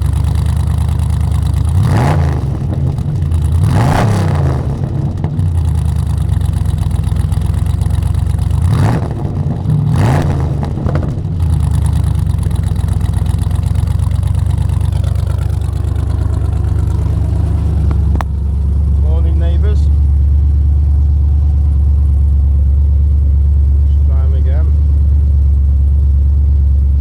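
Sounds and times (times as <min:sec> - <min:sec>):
car engine revving and idling: 0:00.0 - 0:27.0.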